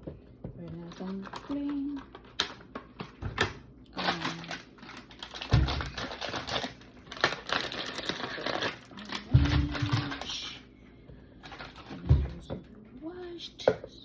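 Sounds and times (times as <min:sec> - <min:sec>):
strawberries clattering in a bowl: 0:00.6 - 0:10.6.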